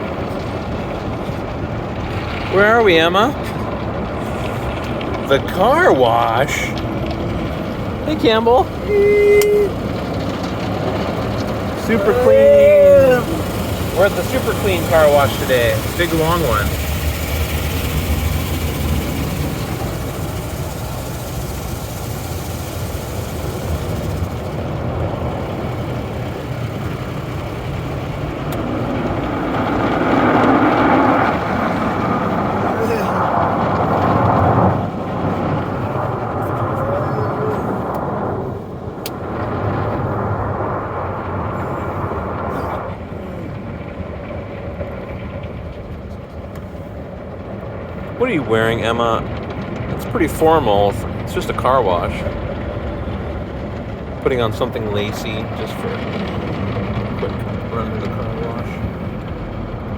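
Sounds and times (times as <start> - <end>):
car engine idling: 0.0 - 59.9
rush of water and machinery: 0.0 - 59.9
hiss of wash spray: 11.5 - 28.1.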